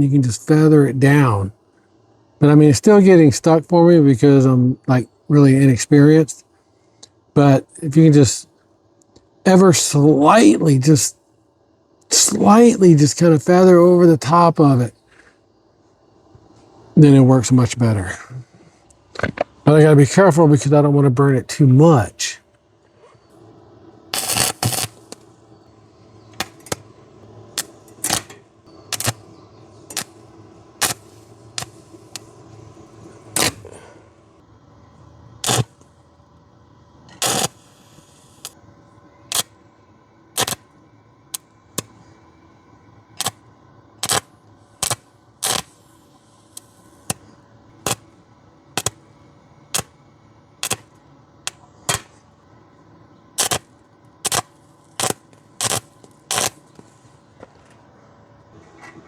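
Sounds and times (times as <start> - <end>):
welder hum: 12.0 - 59.0
welding arc crackle: 12.1 - 14.4, 24.1 - 34.4, 35.3 - 36.2, 37.0 - 38.6, 39.3 - 42.2, 43.0 - 52.4, 53.3 - 57.8.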